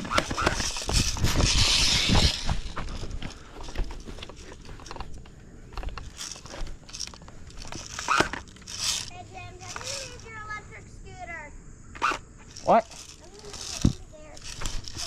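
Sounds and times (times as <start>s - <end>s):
footsteps crunching on dry ground: 0.0s - 5.2s.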